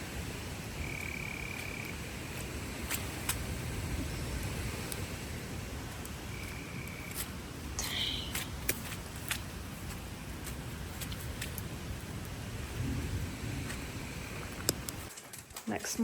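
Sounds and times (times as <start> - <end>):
steady hiss: 0.0 - 16.0
frog trilling: 0.8 - 2.0.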